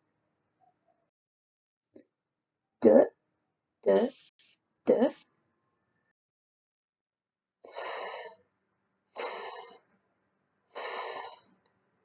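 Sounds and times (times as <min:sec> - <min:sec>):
woman saying f sound: 0:03.9 - 0:04.2, 0:04.9 - 0:05.1.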